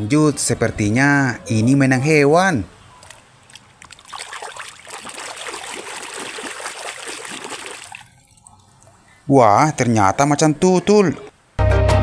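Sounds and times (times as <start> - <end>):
water running and splashing: 2.9 - 9.0.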